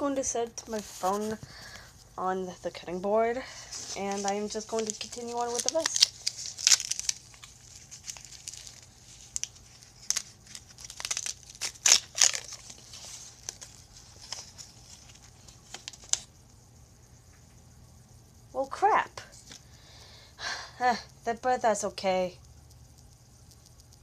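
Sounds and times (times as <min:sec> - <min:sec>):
packet crinkling and tearing: 0:03.7 - 0:16.3.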